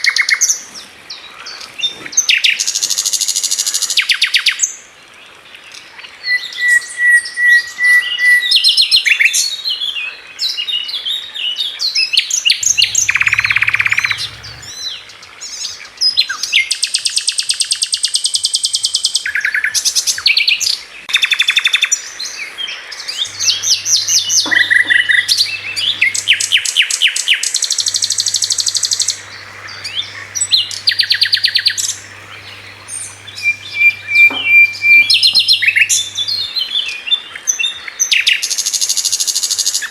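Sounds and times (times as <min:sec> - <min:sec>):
songbird singing trills: 0:12.7 - 0:14.7, 0:23.3 - 0:26.6, 0:28.0 - 0:36.5.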